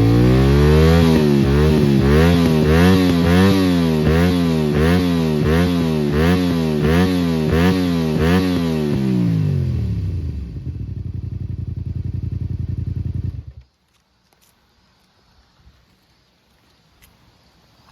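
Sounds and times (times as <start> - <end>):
motorcycle engine revving: 0.0 - 13.6.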